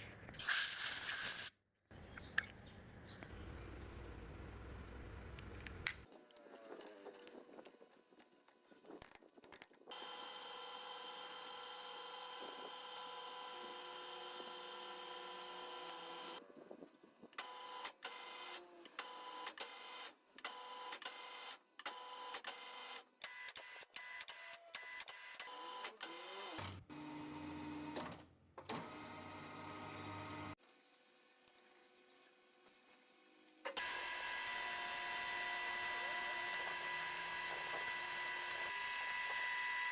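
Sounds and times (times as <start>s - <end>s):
small electric motor whining: 9.9s - 16.4s, 33.7s - 39.9s.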